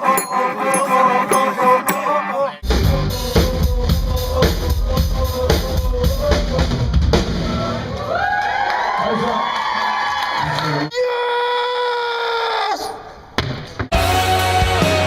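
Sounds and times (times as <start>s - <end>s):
held note: 0.0s - 2.6s
sliding pitched tones: 0.0s - 3.4s
rock drum kit beat: 2.6s - 7.8s, 13.9s - 15.0s.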